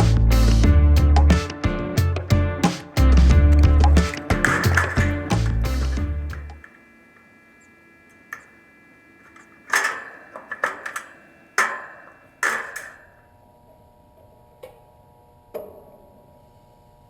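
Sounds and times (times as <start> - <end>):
faint steady hum: 3.4 - 13.2
metallic tool clicks and clanks: 3.5 - 6.8, 9.2 - 13.1.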